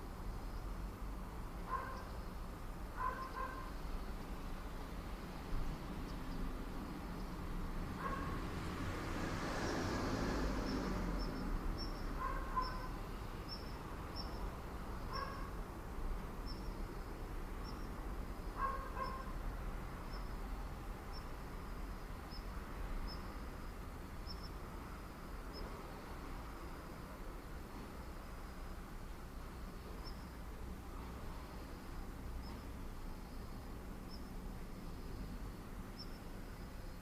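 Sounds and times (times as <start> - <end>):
vehicle passing: 7.4 - 15.6.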